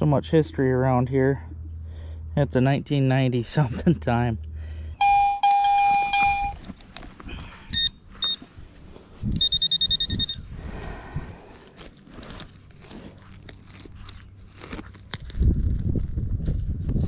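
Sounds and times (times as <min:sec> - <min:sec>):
metal detector beeps: 0:05.0 - 0:06.7, 0:07.4 - 0:08.5, 0:09.3 - 0:10.5.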